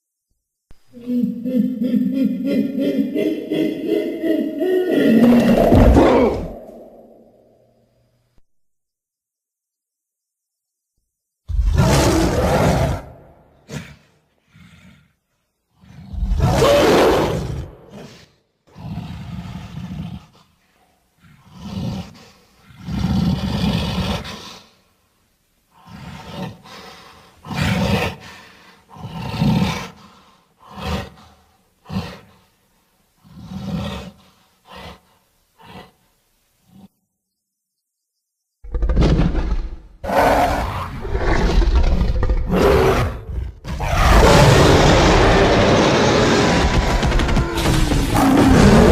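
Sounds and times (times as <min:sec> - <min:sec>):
ape roars and grunts: 0:00.9 - 0:07.4, 0:11.5 - 0:15.0, 0:15.8 - 0:20.3, 0:38.7 - 0:48.9.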